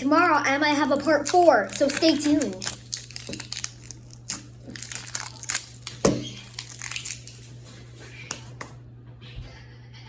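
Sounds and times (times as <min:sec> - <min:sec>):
low steady hum: 0:00.0 - 0:10.0
plastic packaging crinkling: 0:00.9 - 0:08.0.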